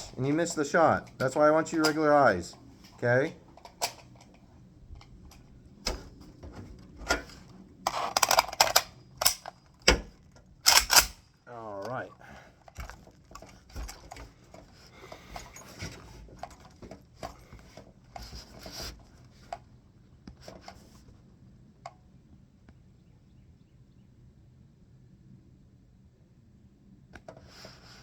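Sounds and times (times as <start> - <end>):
rustling of gear: 0.0 - 11.3, 11.9 - 19.7
small clicks from handling rifle: 0.0 - 21.0.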